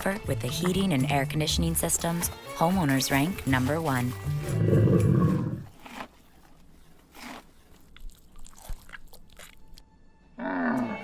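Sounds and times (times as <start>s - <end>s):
low rough growl: 4.5s - 5.7s, 10.4s - 11.0s.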